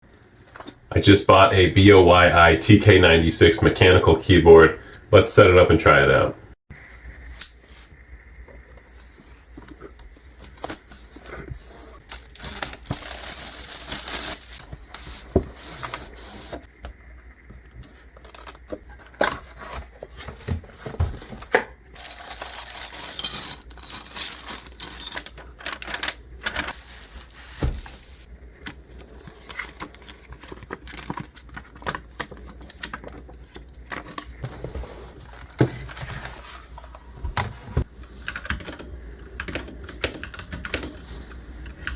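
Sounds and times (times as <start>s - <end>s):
packaging tearing and crinkling: 12.0s - 14.9s, 22.0s - 28.3s.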